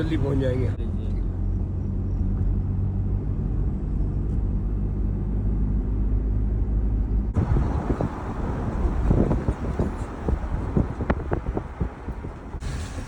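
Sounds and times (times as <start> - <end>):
car engine and tyre rumble: 0.0 - 13.0
wind buffeting microphone: 7.3 - 13.0.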